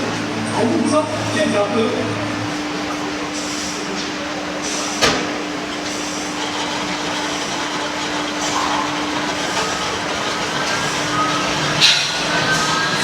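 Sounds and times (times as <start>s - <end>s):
machine running hum: 5.4s - 13.0s.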